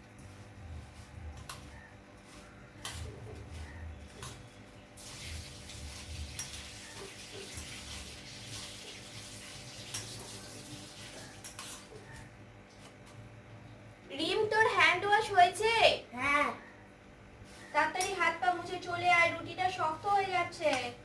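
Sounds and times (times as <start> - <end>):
water running from a tap: 5.0 - 11.7.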